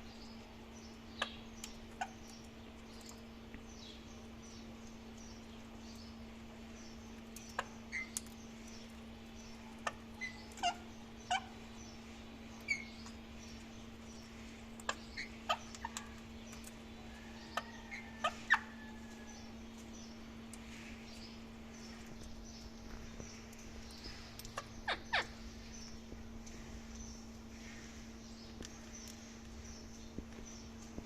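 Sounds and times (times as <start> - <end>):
steady low hum: 0.0 - 31.0
parrot chirps: 24.4 - 25.4.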